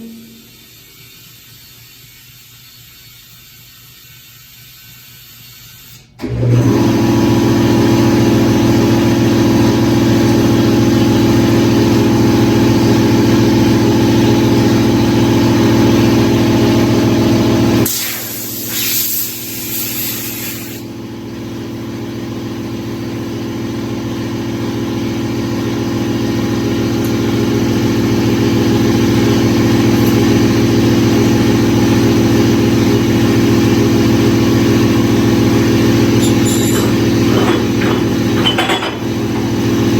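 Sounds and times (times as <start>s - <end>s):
loud hiss of air: 17.8s - 20.8s
machine motor humming: 26.6s - 39.9s.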